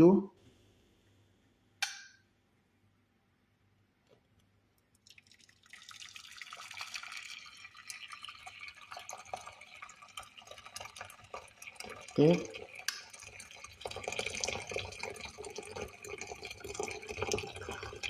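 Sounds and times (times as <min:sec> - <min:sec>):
water pouring into saucepan: 0:05.0 - 0:18.0.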